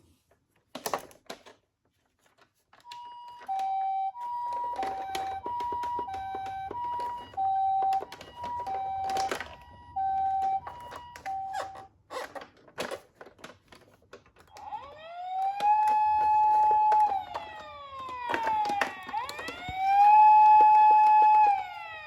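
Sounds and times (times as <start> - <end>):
toy two-tone siren: 2.9 - 11.9, 14.5 - 22.0
rising siren wail: 4.0 - 11.8, 14.5 - 22.0.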